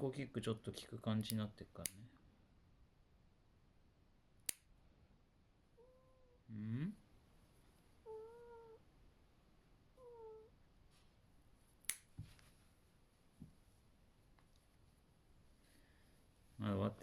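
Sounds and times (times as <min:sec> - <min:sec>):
cat mewing: 0:05.8 - 0:06.4, 0:08.0 - 0:08.8, 0:10.0 - 0:10.6
nail clipper click: 0:11.8 - 0:12.1.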